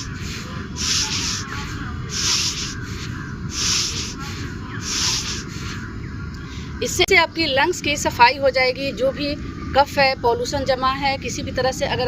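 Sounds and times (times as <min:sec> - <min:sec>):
loud hissing breaths: 0:00.0 - 0:05.8
low background noise: 0:00.0 - 0:12.0.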